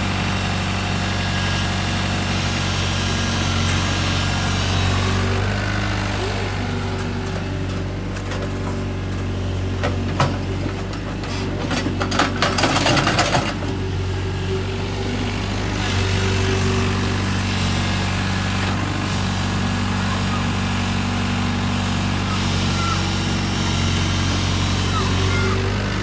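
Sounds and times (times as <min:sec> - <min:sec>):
excavator diesel engine running: 0:00.0 - 0:26.0
sharp knocks and clatter: 0:07.7 - 0:13.8.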